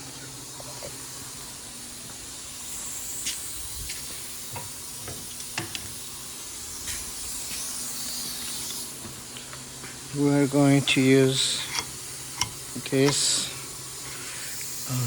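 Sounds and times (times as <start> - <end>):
steady hiss: 0.0 - 15.0
tools clicking and knocking: 11.7 - 13.2.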